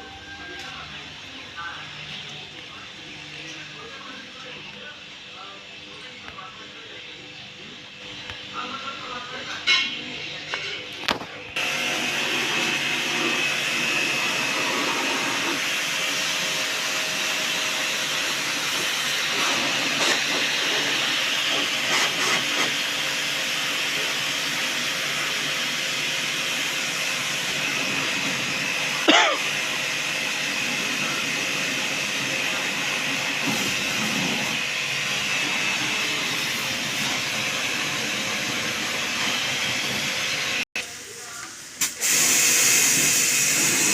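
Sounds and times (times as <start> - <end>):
machine hissing: 11.6 - 43.9.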